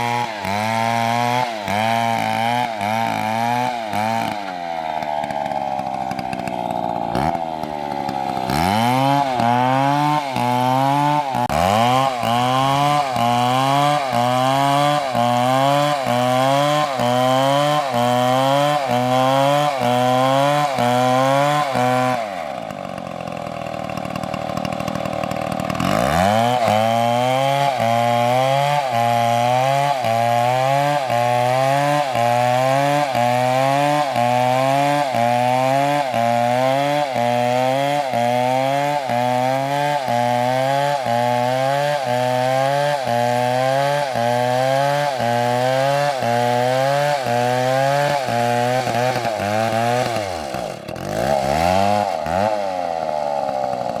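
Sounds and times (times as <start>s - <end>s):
chainsaw cutting wood: 0.0s - 54.0s
chainsaw idling: 0.0s - 54.0s.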